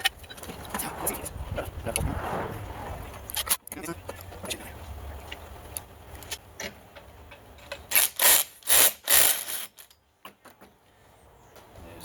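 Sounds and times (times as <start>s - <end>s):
loud rasping bursts: 7.9s - 9.9s.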